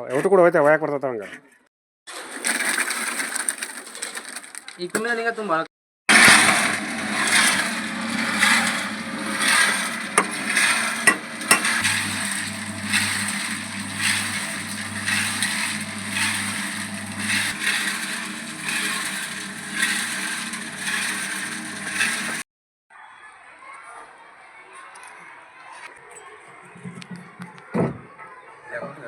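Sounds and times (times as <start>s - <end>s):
low machine hum: 6.1s - 22.4s
rhythmic scraping: 6.1s - 22.4s.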